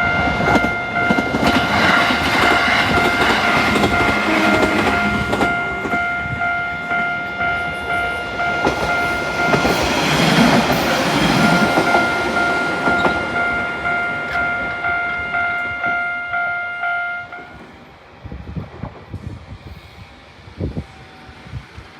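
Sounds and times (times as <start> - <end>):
level-crossing alarm ringing: 0.0 - 17.8
train wheels clattering: 0.4 - 6.2, 6.9 - 14.7.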